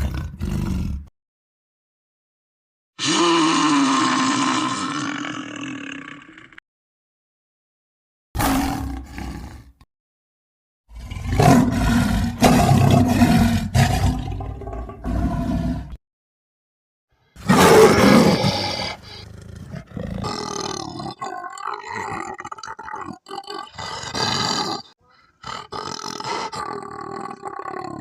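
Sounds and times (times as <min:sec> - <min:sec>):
man roaring into a tube: 0:03.0 - 0:06.6, 0:10.9 - 0:16.0, 0:17.4 - 0:28.0.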